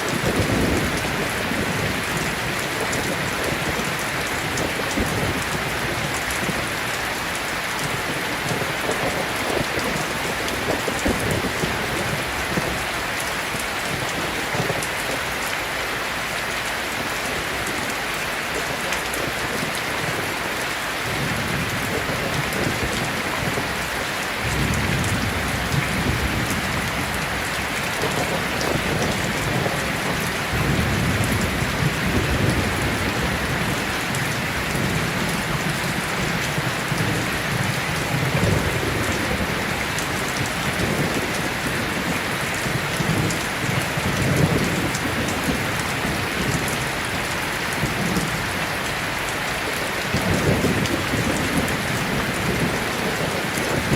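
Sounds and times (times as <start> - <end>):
rolling thunder: 0.0 - 6.8, 21.1 - 46.8
heavy rain falling: 0.0 - 53.9.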